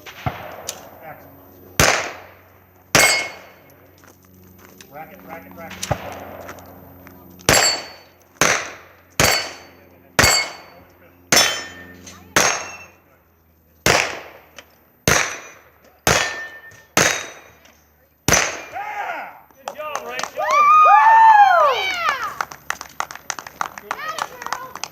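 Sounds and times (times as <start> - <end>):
pistol shots: 1.8 - 3.6, 7.5 - 11.8, 12.4 - 12.9, 13.8 - 17.6, 18.3 - 18.8
thin metallic ring: 3.0 - 3.7, 9.3 - 13.0.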